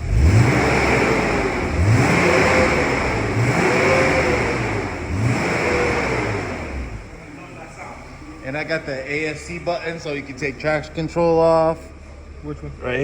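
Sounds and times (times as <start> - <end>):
car engine revving: 0.0 - 12.8.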